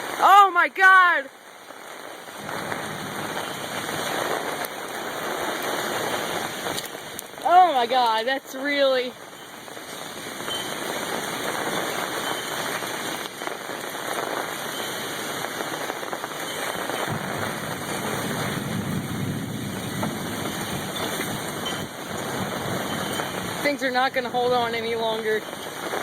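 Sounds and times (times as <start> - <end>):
torrential rain pouring: 0.0 - 26.0
low thunder rumble: 2.3 - 13.2, 16.9 - 26.0.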